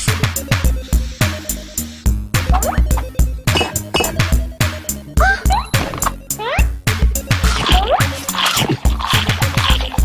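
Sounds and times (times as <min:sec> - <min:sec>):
electronic music: 0:00.5 - 0:06.6.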